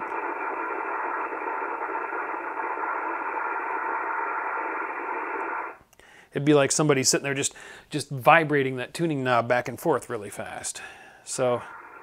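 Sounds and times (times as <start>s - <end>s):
rough scrambled receiver hiss: 0.0s - 5.9s, 11.3s - 12.0s.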